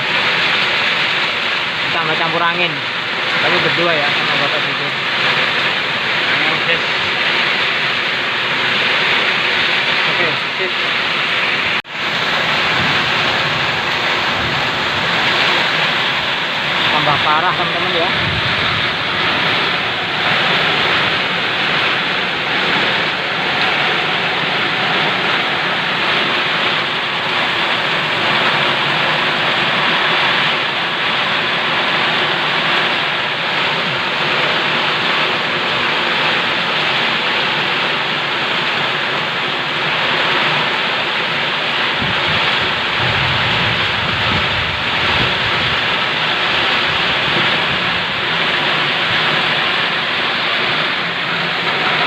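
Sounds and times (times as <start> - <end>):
heavy rain hissing: 0.0 - 52.0
wind rumble on microphone: 12.0 - 29.9, 41.8 - 49.6.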